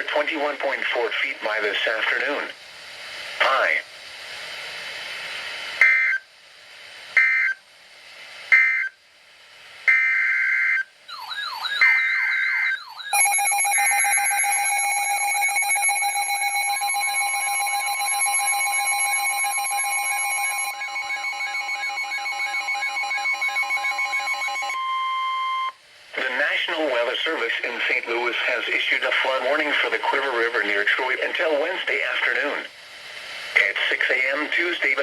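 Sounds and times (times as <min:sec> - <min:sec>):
warbling siren-like electronic tones: 0:10.0 - 0:25.2
digital data bursts: 0:11.1 - 0:24.8
steady alert tone: 0:11.2 - 0:25.7.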